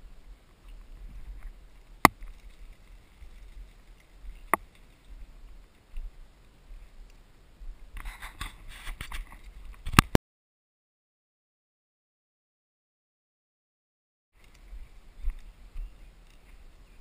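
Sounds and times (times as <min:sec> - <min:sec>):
low wind-like rumble: 0:00.0 - 0:10.1
rustling and scraping: 0:00.6 - 0:06.1, 0:07.9 - 0:10.2.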